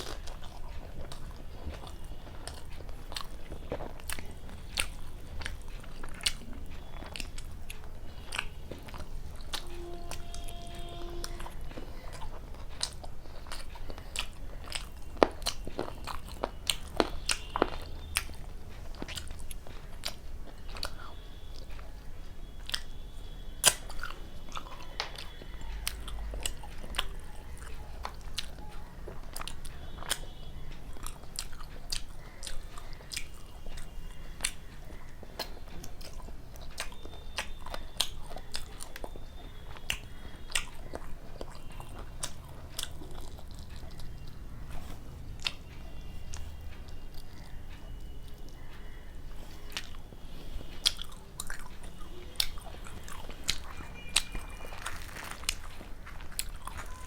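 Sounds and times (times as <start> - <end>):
chewing and biting food: 0.0 - 57.0
mouth clicks and smacks: 23.6 - 30.3, 31.0 - 57.0.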